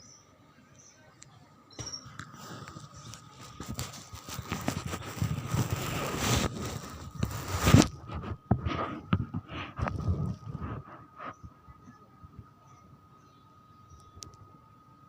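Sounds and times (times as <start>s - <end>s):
rustling and clattering: 2.2s - 11.5s.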